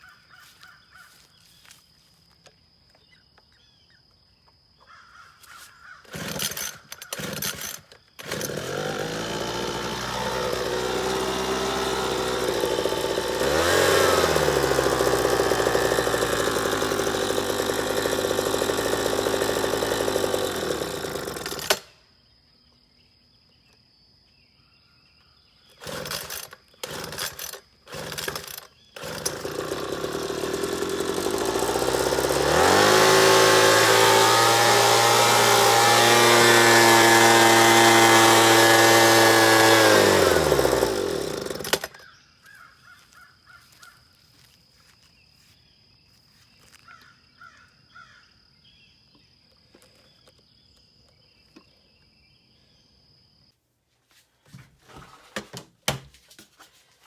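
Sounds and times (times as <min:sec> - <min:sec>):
leaf blower engine: 0:06.0 - 0:22.0, 0:25.8 - 0:45.0.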